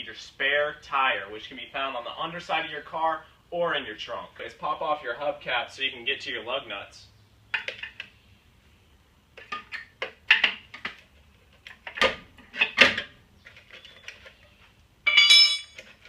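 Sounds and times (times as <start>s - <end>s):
ringing metal clatter: 15.0s - 16.0s.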